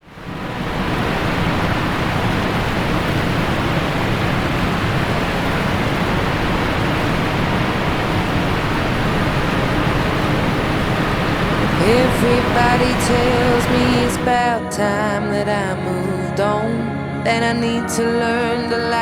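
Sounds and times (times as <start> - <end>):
waterfall rushing: 0.0 - 14.6.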